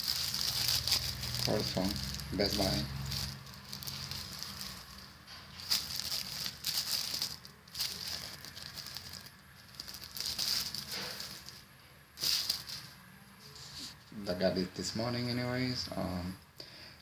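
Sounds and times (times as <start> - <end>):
packaging rustling and crinkling: 0.0 - 14.0.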